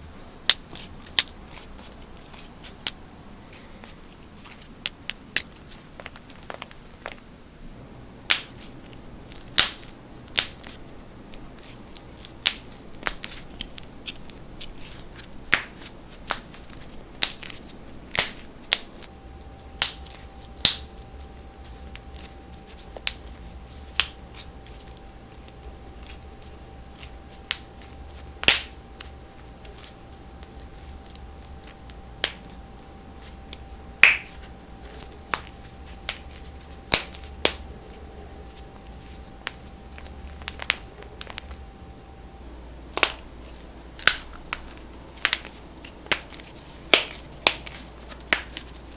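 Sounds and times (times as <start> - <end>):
knuckles cracking: 33.5 - 38.6.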